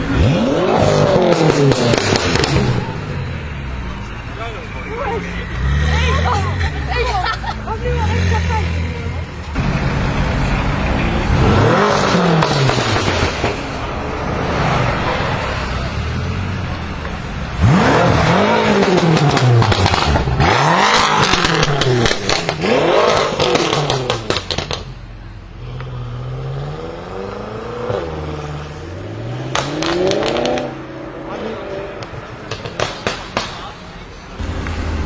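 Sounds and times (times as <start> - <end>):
car engine revving: 0.0 - 33.4, 34.3 - 35.0
exhaust crackles and pops: 0.9 - 3.0, 17.0 - 25.0, 32.0 - 35.0.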